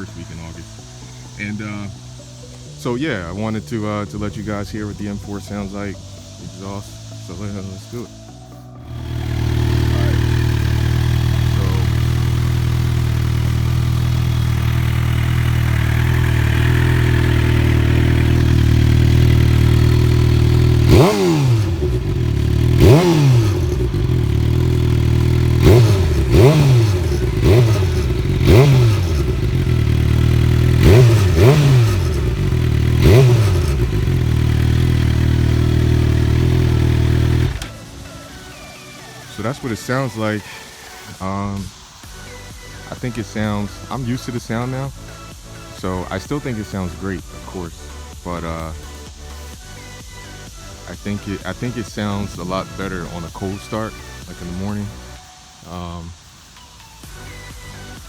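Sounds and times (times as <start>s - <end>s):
engine revving throttle blips: 0.0s - 41.8s
motorcycle engine idling: 0.0s - 58.0s.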